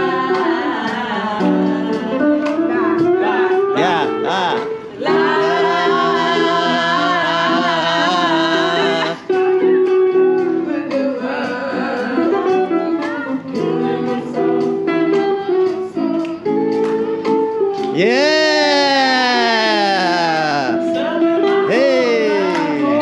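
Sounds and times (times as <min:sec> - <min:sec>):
acoustic guitar playing: 0:00.0 - 0:23.0
person singing a long note: 0:17.9 - 0:23.0.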